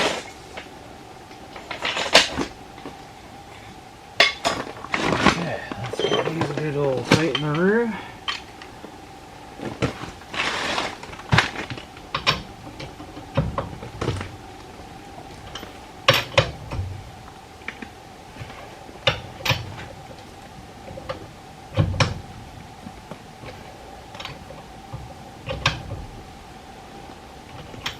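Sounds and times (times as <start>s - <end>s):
faint steady hum: 0.0s - 27.9s
metal tools clinking on metal: 5.8s - 7.6s.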